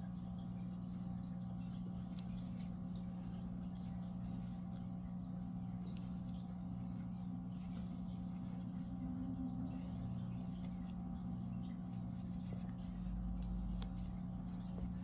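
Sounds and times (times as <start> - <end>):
low electrical hum: 0.0 - 15.0
crochet hook scratching yarn: 9.7 - 11.1, 11.8 - 15.0.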